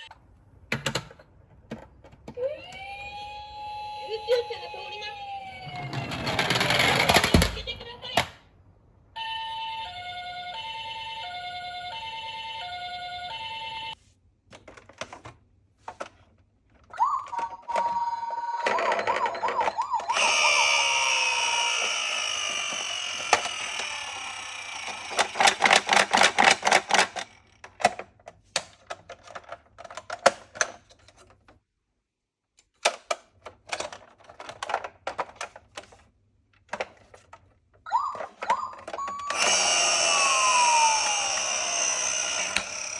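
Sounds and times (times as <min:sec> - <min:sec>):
toy ambulance siren: 0:02.4 - 0:06.0, 0:09.2 - 0:14.0, 0:17.0 - 0:27.3, 0:37.9 - 0:42.9
toy cars rattling down cardboard: 0:06.0 - 0:07.6, 0:18.7 - 0:28.2.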